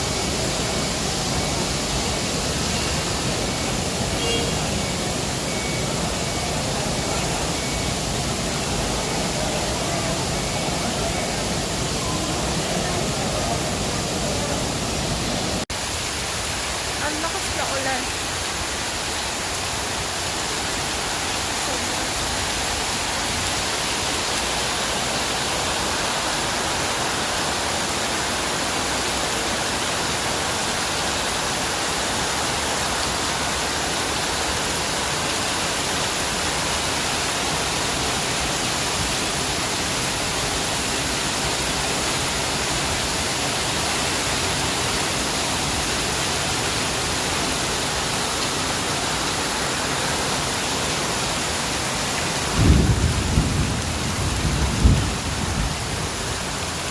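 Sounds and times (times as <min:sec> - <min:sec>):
heavy rain falling: 0:00.0 - 0:56.9.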